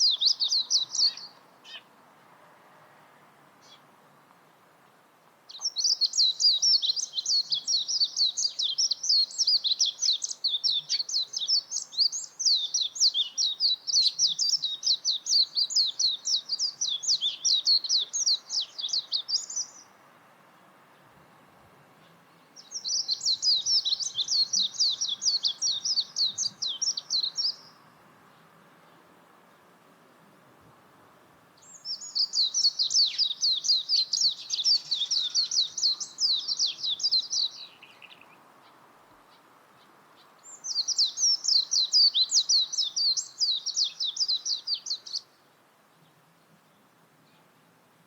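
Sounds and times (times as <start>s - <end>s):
bird twittering song: 0.0s - 1.9s, 5.5s - 20.0s, 22.0s - 29.0s, 31.6s - 45.4s.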